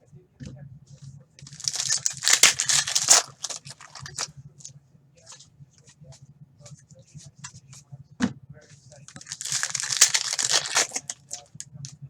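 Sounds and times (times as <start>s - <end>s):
faint low hum: 0.0s - 12.0s
cards rustling and clicking: 1.4s - 4.3s, 9.1s - 11.7s
wrapper crinkling and tearing: 1.5s - 4.3s, 9.1s - 11.6s.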